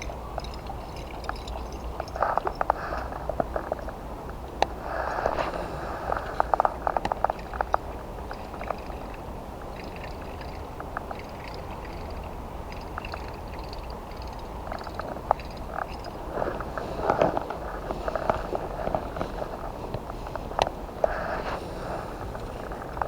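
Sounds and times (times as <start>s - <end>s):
frogs chirping: 7.2s - 16.3s.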